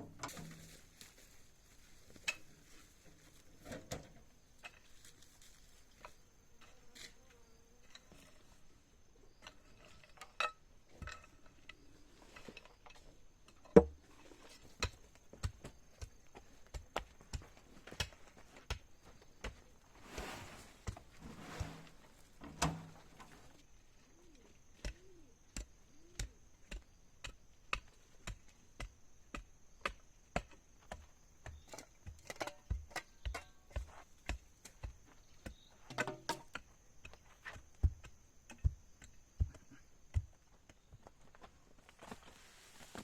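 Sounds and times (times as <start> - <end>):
short rustling: 20.0 - 23.6.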